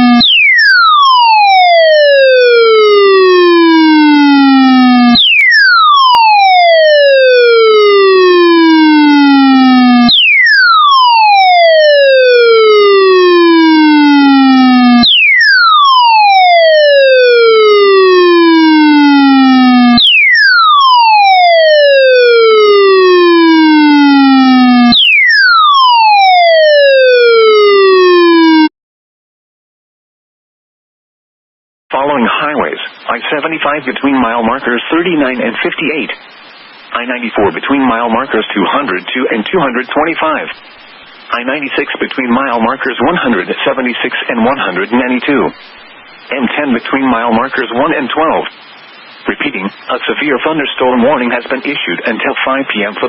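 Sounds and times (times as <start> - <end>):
electronic siren alert tone: 0.0 - 28.7.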